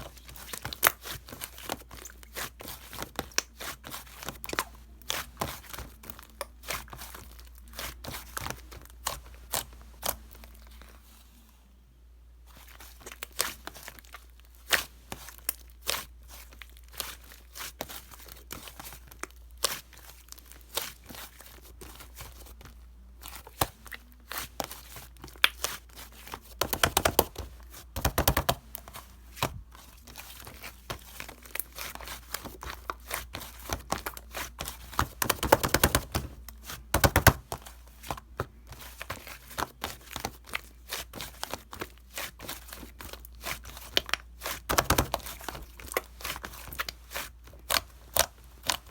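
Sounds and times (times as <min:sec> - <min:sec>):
crinkly material crinkling and tearing: 0:00.0 - 0:11.8, 0:12.4 - 0:48.9.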